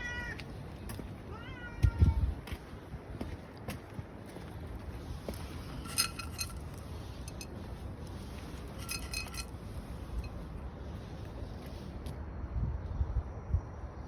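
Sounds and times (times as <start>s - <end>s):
small metal pieces jingling: 5.6s - 7.6s, 8.4s - 9.6s.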